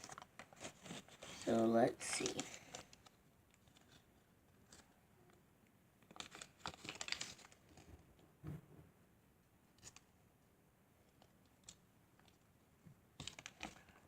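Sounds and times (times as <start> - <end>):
packaging crinkling: 6.1 - 7.6
soft knock: 8.4 - 8.9.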